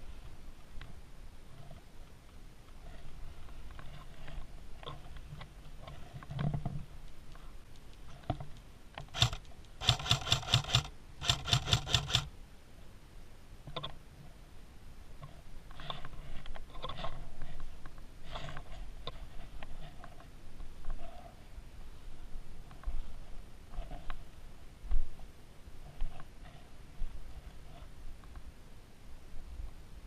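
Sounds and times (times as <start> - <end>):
airsoft gun firing: 9.1 - 12.3.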